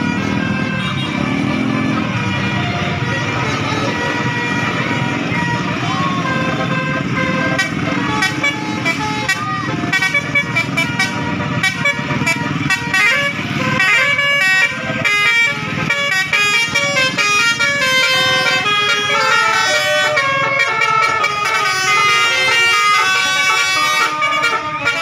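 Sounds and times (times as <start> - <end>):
multi-tone bus air horn tune: 0.0 - 25.0.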